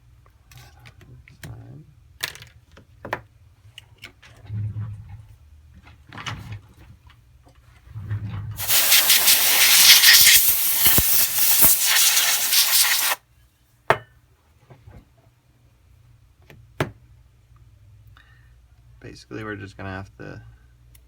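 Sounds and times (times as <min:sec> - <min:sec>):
pressurised air hissing: 0:08.6 - 0:13.2.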